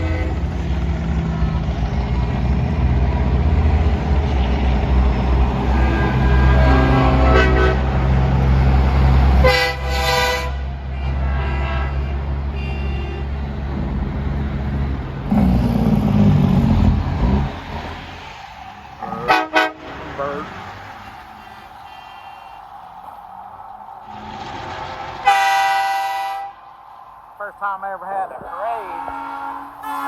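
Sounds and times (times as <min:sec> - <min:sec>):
truck horn blasts: 0:00.0 - 0:00.8, 0:05.6 - 0:08.3, 0:09.3 - 0:13.5, 0:19.0 - 0:20.4, 0:21.8 - 0:22.7, 0:25.2 - 0:26.6, 0:28.8 - 0:30.0
truck engine rumbling: 0:00.0 - 0:30.0
quick horn toots: 0:25.2 - 0:26.6, 0:28.8 - 0:30.0.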